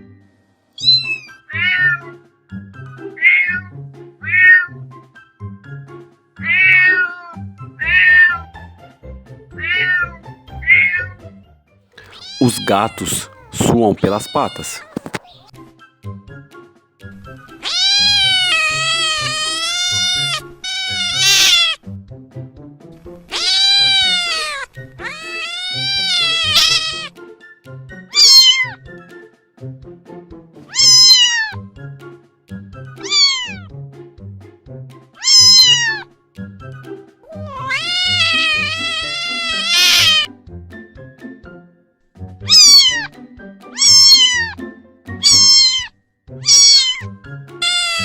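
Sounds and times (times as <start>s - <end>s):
cat meowing: 0.8s - 2.0s, 3.2s - 3.7s, 12.0s - 15.5s, 17.6s - 21.8s, 23.3s - 27.1s, 28.2s - 28.8s, 30.7s - 31.6s, 33.0s - 33.6s, 35.2s - 36.0s, 37.2s - 40.3s, 42.5s - 43.1s, 43.7s - 44.6s, 45.2s - 48.0s.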